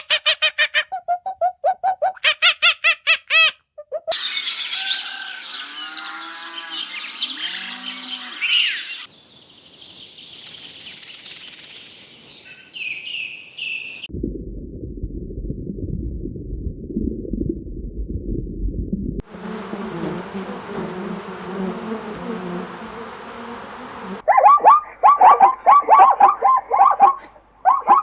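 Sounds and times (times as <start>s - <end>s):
chorus of bird calls: 4.0s - 14.1s
high steady hiss: 9.2s - 12.4s, 19.2s - 24.2s
rapid repeated animal calls: 10.2s - 12.2s
low rumbling noise: 14.1s - 19.2s.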